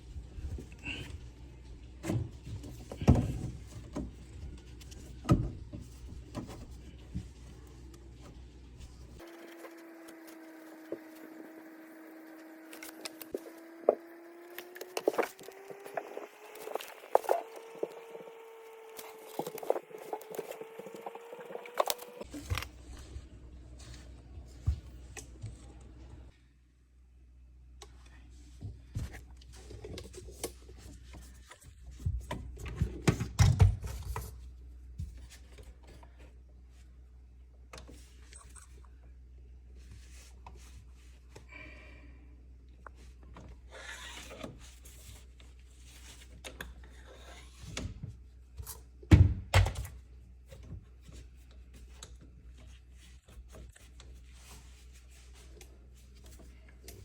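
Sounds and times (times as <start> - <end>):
knocks and thunks of handling: 2.0 - 7.5, 28.6 - 34.4, 47.7 - 52.7.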